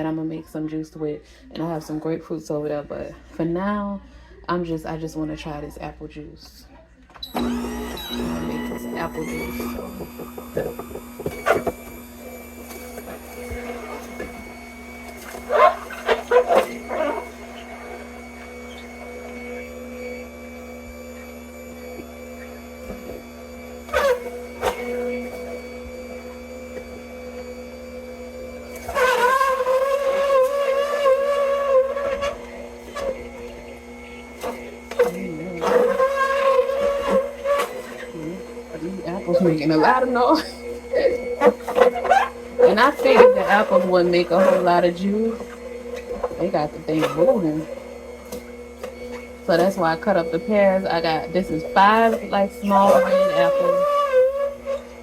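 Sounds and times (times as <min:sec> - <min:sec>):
electric juicer motor running: 0:07.2 - 0:55.0
apples crunching: 0:07.4 - 0:19.5.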